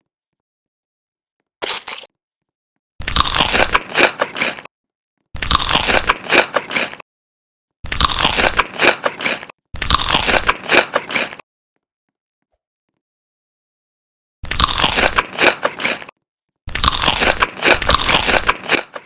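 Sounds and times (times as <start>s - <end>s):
crunchy food being chewed: 1.6s - 2.1s, 3.0s - 4.7s, 5.4s - 7.0s, 7.8s - 11.4s, 14.4s - 16.1s, 16.7s - 19.0s.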